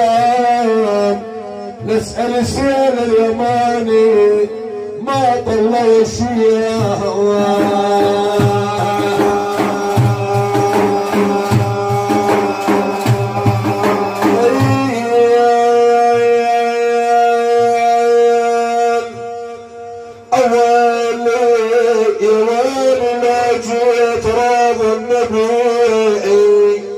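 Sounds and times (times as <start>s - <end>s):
man singing long notes: 0.0s - 26.9s
hand drums beating: 6.7s - 15.2s.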